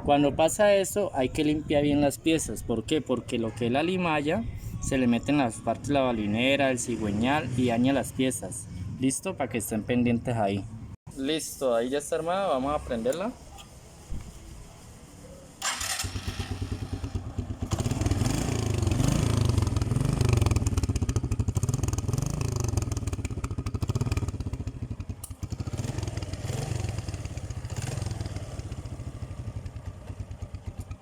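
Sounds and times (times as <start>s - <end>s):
motorcycle engine revving and idling: 15.5s - 31.0s.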